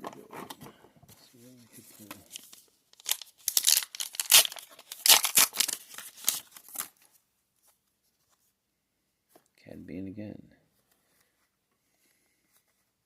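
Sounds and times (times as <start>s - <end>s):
foil wrapper tearing and crinkling: 2.4s - 7.0s.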